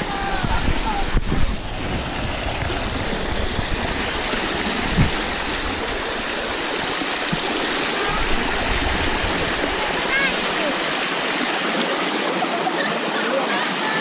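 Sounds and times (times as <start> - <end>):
stream water rushing over rocks: 0.0 - 14.0.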